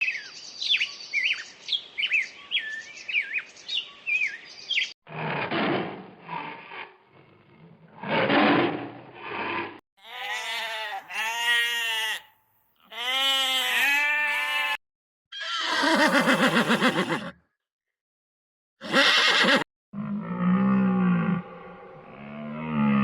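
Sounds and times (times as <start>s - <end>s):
birds chirping rapidly: 0.0s - 5.0s
rough breathy animal sounds: 5.1s - 9.8s, 15.7s - 17.4s.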